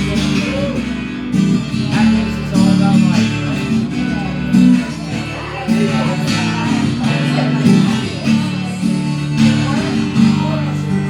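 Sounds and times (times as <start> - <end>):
live band strummed strings: 0.0 - 11.0.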